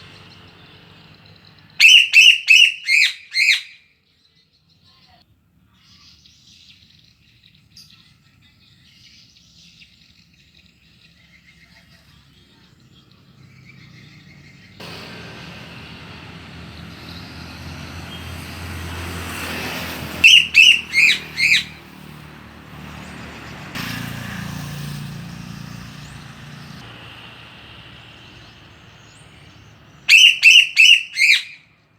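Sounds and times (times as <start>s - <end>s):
passing traffic: 0.0s - 3.9s, 9.9s - 31.9s
songbird calls: 0.0s - 14.8s, 20.2s - 21.8s, 28.4s - 31.8s.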